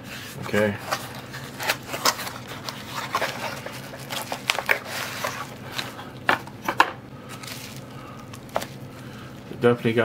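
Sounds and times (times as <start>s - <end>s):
paper rustling: 0.2s - 9.1s
packaging clicks: 0.9s - 8.8s.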